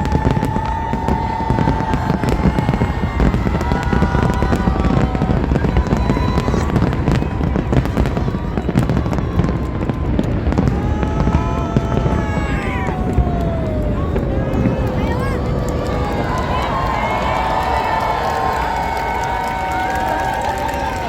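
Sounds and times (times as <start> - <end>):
fireworks whistling: 0.0 - 11.3
fireworks bangs and crackling: 0.0 - 21.0.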